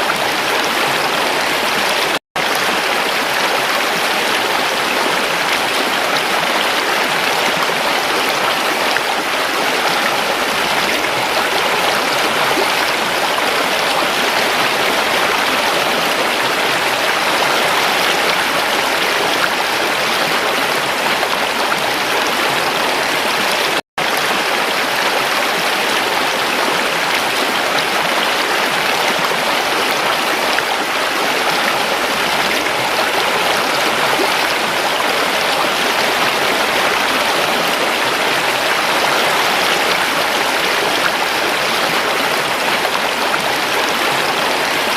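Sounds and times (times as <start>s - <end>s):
river water rushing: 0.0s - 44.9s.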